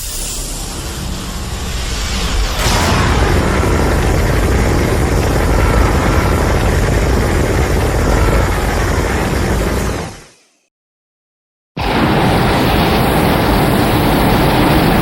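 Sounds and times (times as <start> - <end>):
loud dense monster rumbling: 0.7 - 10.2.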